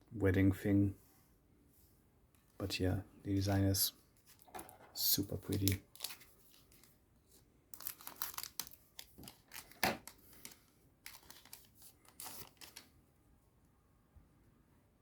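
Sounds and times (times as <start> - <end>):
foil wrapper tearing and crinkling: 5.5 - 7.0, 7.7 - 12.9.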